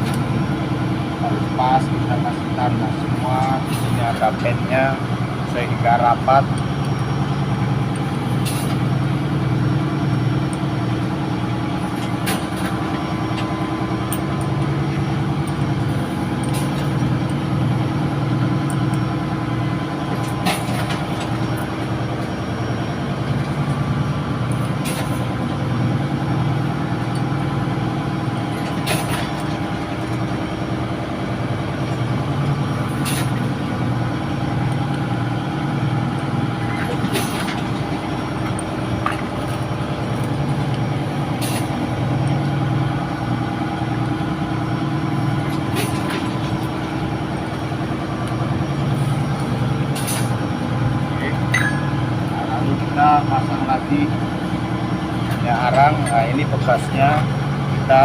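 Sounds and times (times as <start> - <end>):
diesel engines humming: 0.0 - 58.0.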